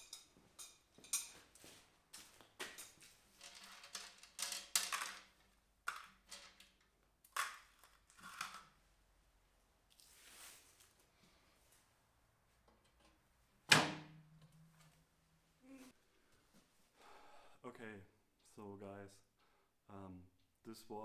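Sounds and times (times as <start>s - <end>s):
hardware clicking and clattering: 2.6s - 8.7s.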